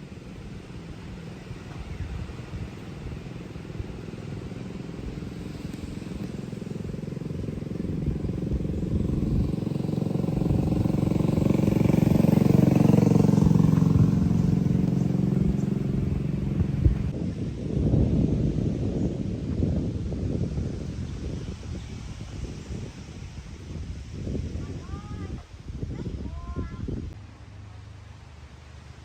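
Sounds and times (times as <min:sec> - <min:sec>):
motorcycle engine running: 0:00.0 - 0:17.2.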